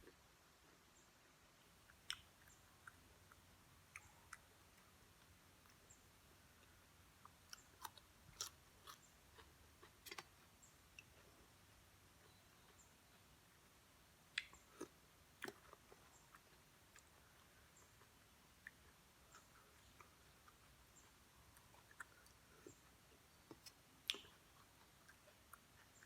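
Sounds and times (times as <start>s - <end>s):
person chewing and crunching food: 6.5s - 11.6s, 14.3s - 26.0s.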